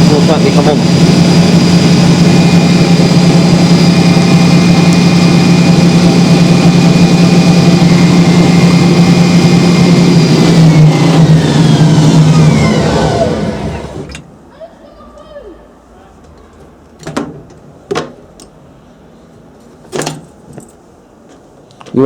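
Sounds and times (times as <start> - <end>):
spin dryer humming and whining: 0.0 - 14.3.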